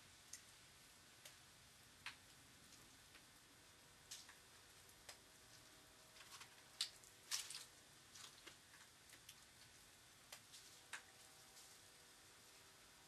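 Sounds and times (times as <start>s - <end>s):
faint clicks and crackles: 0.2s - 0.6s, 2.0s - 3.4s, 4.0s - 12.1s.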